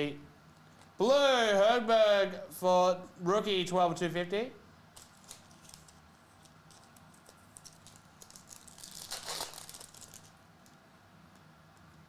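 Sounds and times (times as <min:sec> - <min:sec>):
foil wrapper crinkling and tearing: 0:05.0 - 0:10.4.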